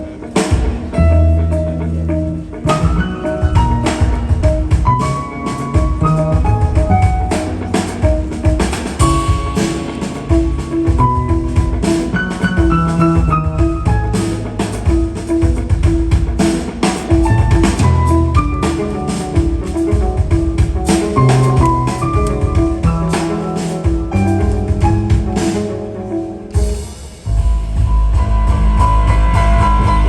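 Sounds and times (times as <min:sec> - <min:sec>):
busy drum kit: 0:00.0 - 0:30.0
piano: 0:00.0 - 0:30.0
low bass line: 0:01.0 - 0:05.2, 0:17.2 - 0:23.3, 0:24.0 - 0:26.2, 0:27.3 - 0:30.0.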